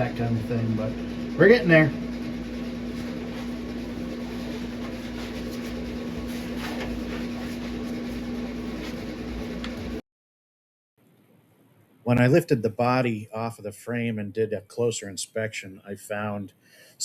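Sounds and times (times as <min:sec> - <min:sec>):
steady mechanical hum: 0:00.0 - 0:10.0.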